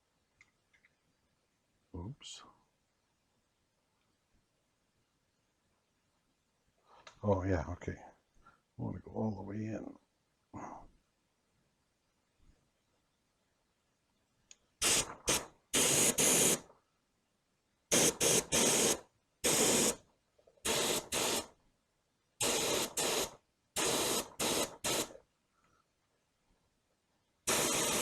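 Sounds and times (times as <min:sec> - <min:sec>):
spray gun hissing blasts: 0:14.8 - 0:16.6, 0:17.9 - 0:20.0, 0:20.6 - 0:21.5, 0:22.4 - 0:25.2, 0:27.5 - 0:28.0.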